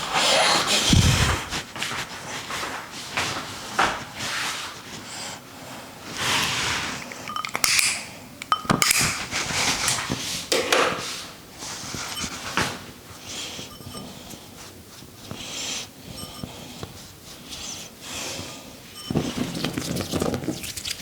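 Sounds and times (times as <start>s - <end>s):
sharp clicks and slaps: 7.1s - 9.3s
hands rubbing oiled hair: 19.2s - 21.0s.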